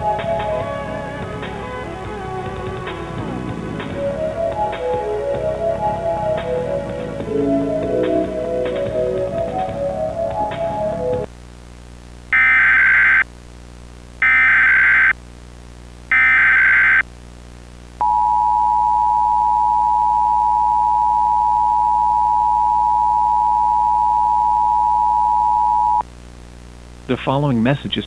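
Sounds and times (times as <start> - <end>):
warbling data bursts: 12.4 - 13.2, 14.2 - 15.1, 16.1 - 17.0
two-tone attention signal: 18.0 - 26.0.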